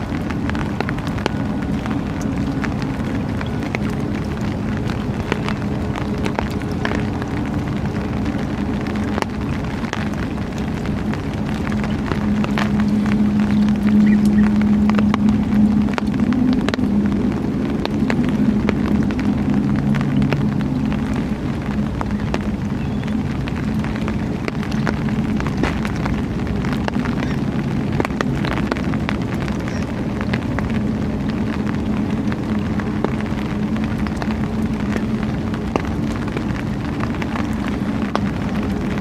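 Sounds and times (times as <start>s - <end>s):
continuous crackling noise: 0.0s - 39.0s
low motor hum: 0.0s - 39.0s.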